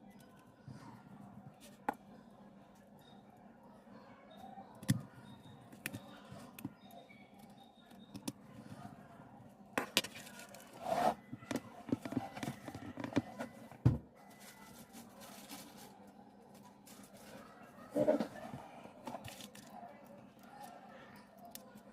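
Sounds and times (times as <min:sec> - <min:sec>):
light scraping: 0:10.4 - 0:13.6.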